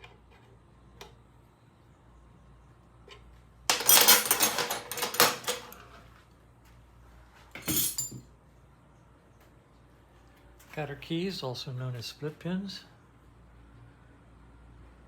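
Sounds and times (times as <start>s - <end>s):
metal parts clattering: 3.7s - 6.0s, 7.6s - 8.2s.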